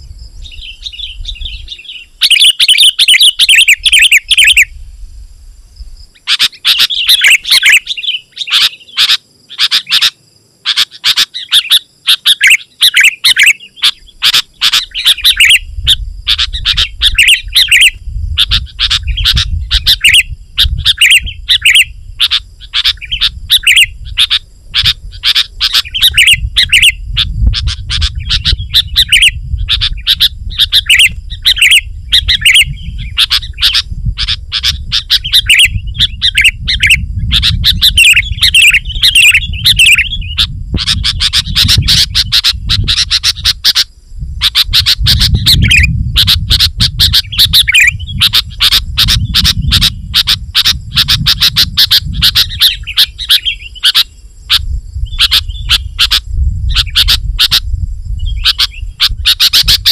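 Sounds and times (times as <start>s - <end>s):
bulbul singing rapid chattering phrases: 0.5s - 4.7s, 6.2s - 59.9s.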